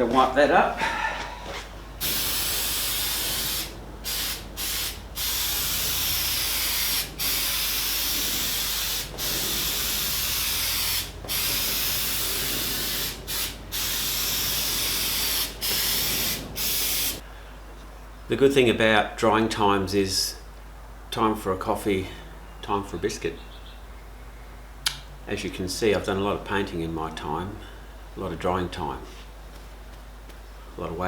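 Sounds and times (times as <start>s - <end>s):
aerosol spray hissing: 2.0s - 17.2s.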